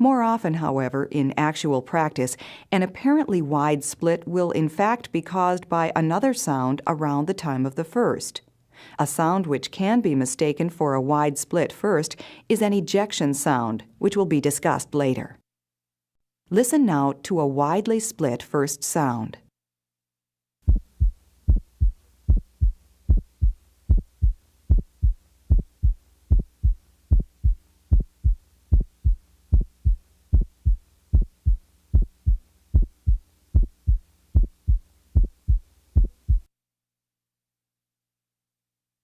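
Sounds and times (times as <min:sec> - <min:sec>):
heartbeat with split thumps: 0:20.6 - 0:36.5.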